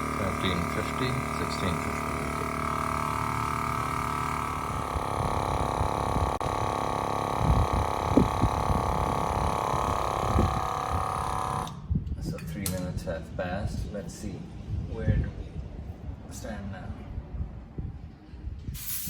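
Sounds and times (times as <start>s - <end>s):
air compressor running: 0.0s - 12.0s, 18.6s - 19.0s.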